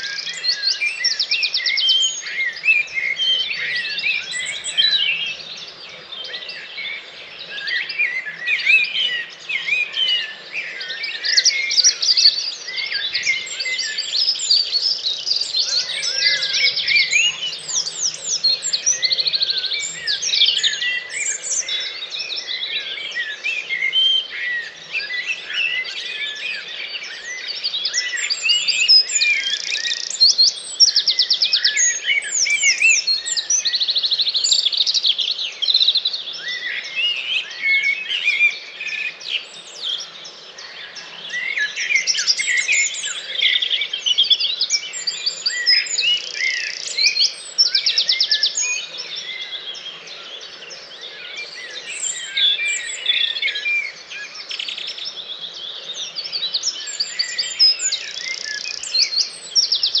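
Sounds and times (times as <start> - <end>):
songbirds singing: 0.0 - 60.0.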